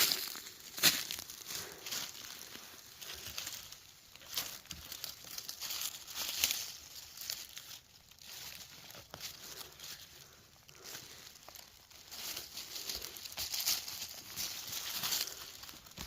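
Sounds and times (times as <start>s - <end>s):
dry leaves rustling and crinkling: 0.0s - 16.0s
leaves crackling: 0.0s - 16.0s.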